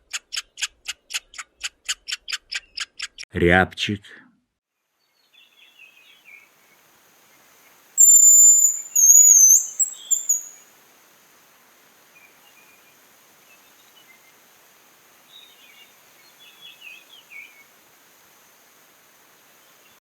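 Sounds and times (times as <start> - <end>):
faint bird chirps: 5.0 - 10.6
high thin bird whistle and trill: 8.0 - 10.6.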